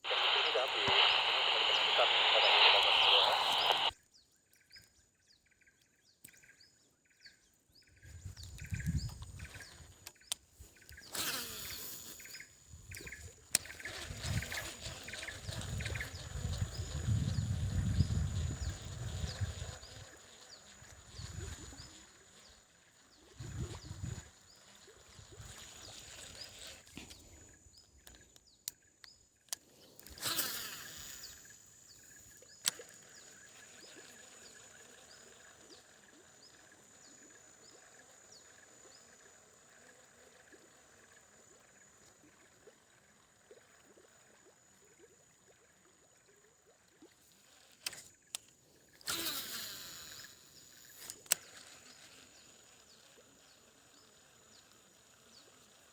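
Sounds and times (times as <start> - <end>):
faint chirps: 0.0 - 55.9
high-pitched insect drone: 11.0 - 26.5, 49.1 - 54.1
sharp clicks: 32.6 - 32.9.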